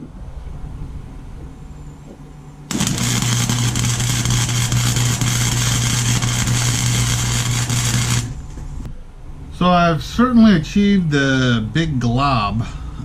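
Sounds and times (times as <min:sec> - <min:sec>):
low electrical hum: 0:00.0 - 0:13.0
welding arc crackle: 0:02.7 - 0:08.9.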